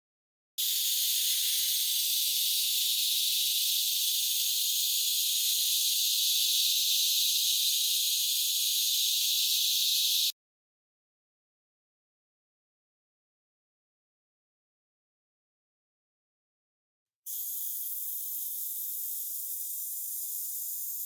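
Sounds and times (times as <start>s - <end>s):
high-pitched hiss: 0.6s - 10.3s.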